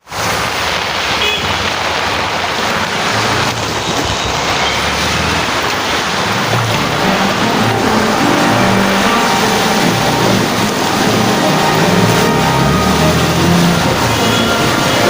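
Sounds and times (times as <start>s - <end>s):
heavy rain rushing: 0.0s - 15.0s
vehicle engine humming: 3.4s - 15.0s.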